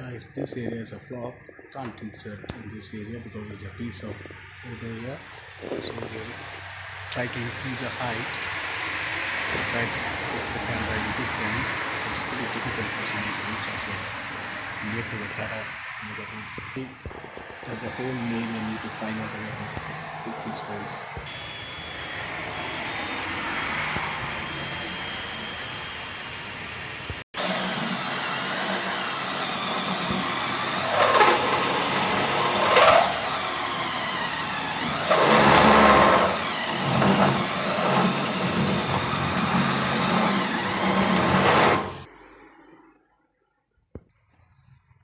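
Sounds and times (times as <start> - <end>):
motor running: 18.4 - 42.1.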